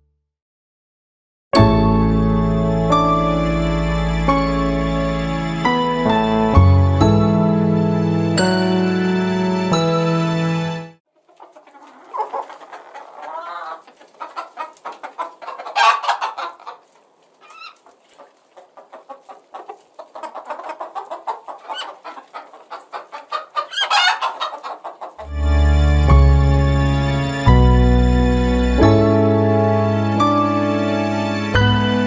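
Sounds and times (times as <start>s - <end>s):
poultry calling: 11.2s - 25.3s.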